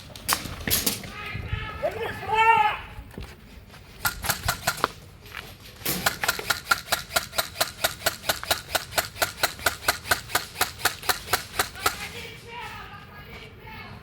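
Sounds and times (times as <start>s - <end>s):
airsoft gun shots: 4.0s - 4.9s, 5.9s - 12.2s.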